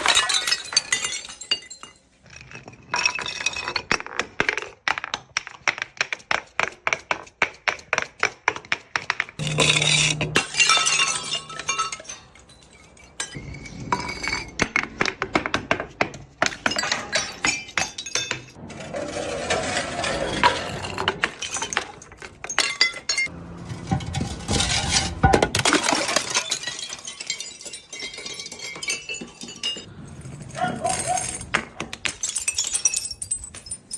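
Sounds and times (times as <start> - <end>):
glass bottles breaking: 0.0 - 4.0, 9.4 - 13.4, 16.4 - 18.6, 20.3 - 23.3, 23.9 - 29.9, 30.8 - 33.9.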